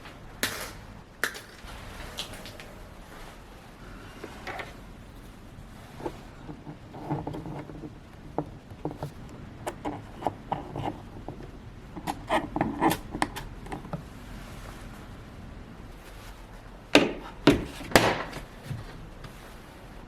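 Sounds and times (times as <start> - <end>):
clicks and knocks of objects handled: 0.0 - 2.7, 4.2 - 14.1.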